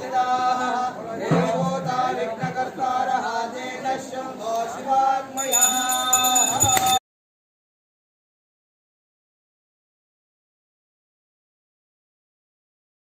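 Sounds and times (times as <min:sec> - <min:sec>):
chanting voice in music: 0:00.0 - 0:06.1.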